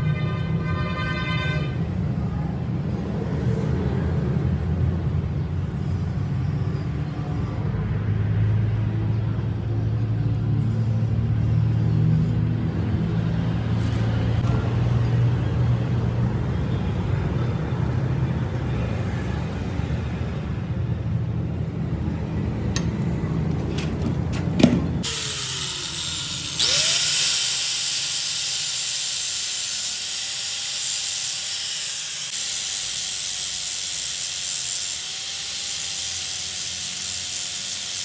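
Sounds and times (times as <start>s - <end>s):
low mechanical rumble: 8.8s - 34.4s.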